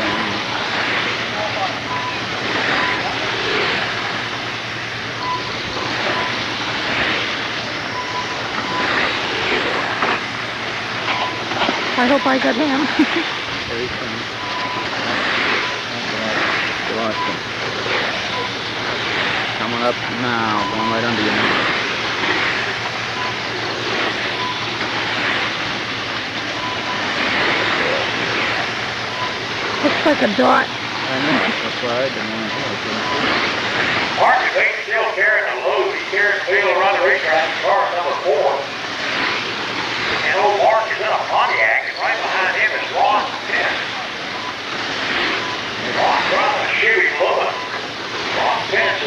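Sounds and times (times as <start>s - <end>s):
small engines buzzing: 0.0s - 49.0s
faint short beeps: 1.8s - 3.2s, 5.2s - 6.4s, 20.5s - 21.4s
rc car motors buzzing: 2.4s - 4.4s, 8.5s - 10.3s, 14.8s - 25.8s.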